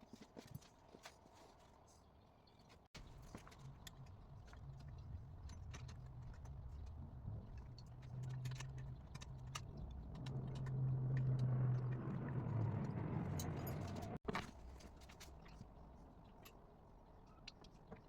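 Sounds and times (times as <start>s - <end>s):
light clicks and metallic clinks: 3.0s - 12.1s.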